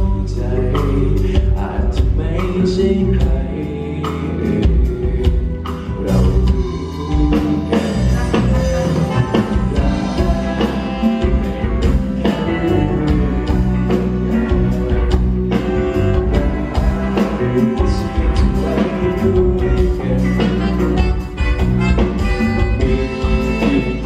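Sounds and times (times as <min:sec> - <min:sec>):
live band playing pop ballad: 0:00.0 - 0:24.0
drum beat: 0:08.2 - 0:24.0.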